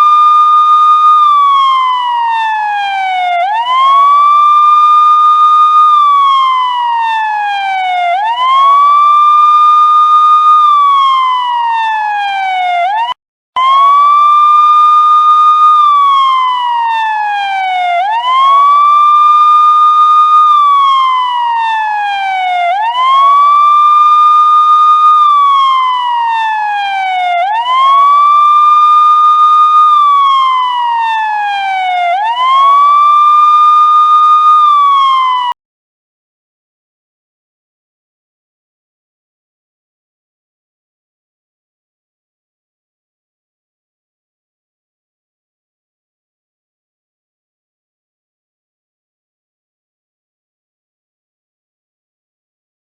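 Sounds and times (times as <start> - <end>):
police car siren wailing: 0.0 - 35.6.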